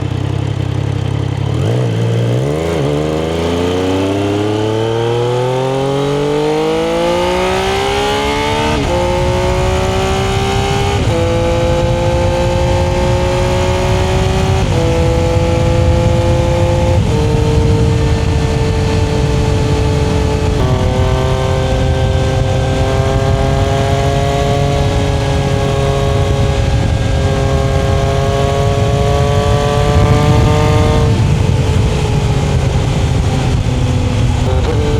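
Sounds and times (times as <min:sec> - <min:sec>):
motorcycle engine revving: 0:00.0 - 0:34.9.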